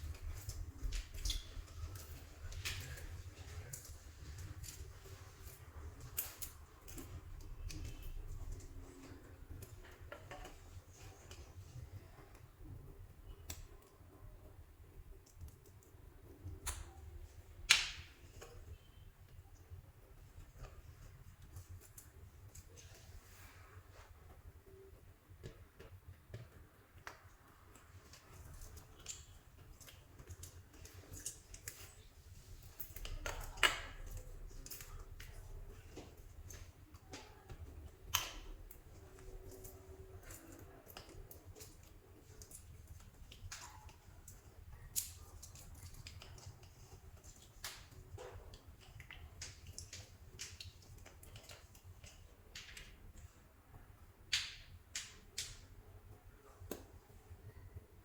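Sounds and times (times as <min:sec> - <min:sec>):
low steady hum: 0:00.0 - 0:58.0
clay squished by hand: 0:17.6 - 0:18.5.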